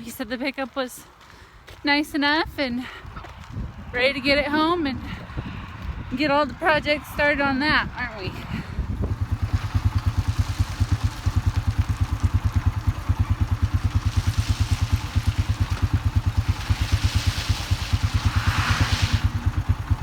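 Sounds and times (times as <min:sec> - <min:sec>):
engine idling: 0:08.7 - 0:20.0.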